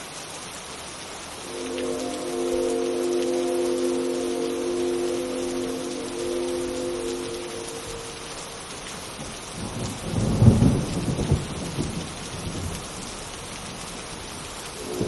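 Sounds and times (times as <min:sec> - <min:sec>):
steady rain: 0:00.0 - 0:15.0
synthesized train horn chord: 0:01.4 - 0:09.4, 0:14.8 - 0:15.0
low rumble of thunder: 0:07.9 - 0:15.0.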